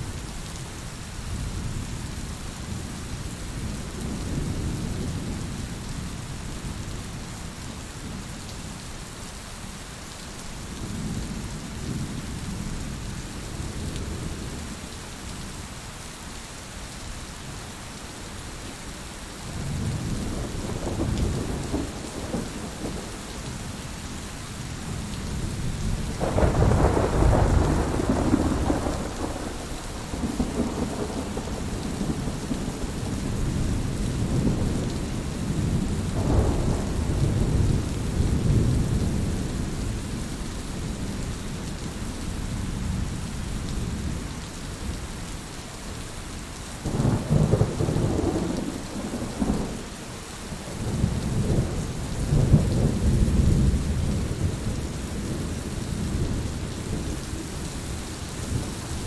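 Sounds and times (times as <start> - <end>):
steady rain: 0.0 - 59.0
rolling thunder: 19.6 - 23.8, 24.8 - 40.0, 46.9 - 49.9, 50.8 - 59.0.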